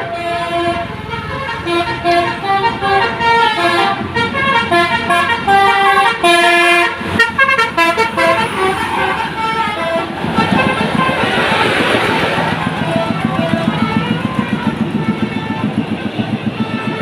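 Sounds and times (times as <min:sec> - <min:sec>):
multi-tone musical bus horn: 0:00.0 - 0:17.0.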